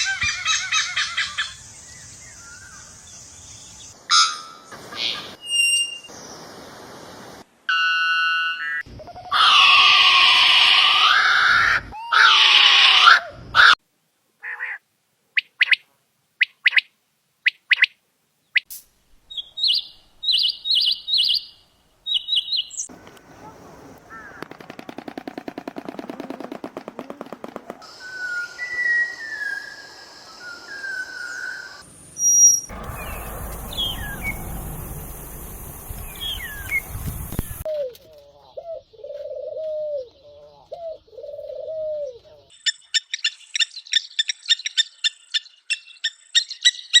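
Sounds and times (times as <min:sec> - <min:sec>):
bird chirps: 0:18.5 - 0:22.9, 0:27.8 - 0:37.8
sharp high bird chirps: 0:18.5 - 0:22.9, 0:27.9 - 0:37.7
bird fast rattle: 0:24.4 - 0:27.8
hissing background: 0:27.5 - 0:37.7
low repeated bird notes: 0:32.4 - 0:37.7.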